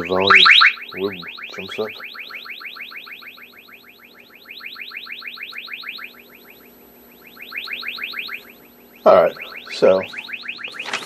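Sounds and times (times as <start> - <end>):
rapid rising electronic chirps: 0.0 - 11.0.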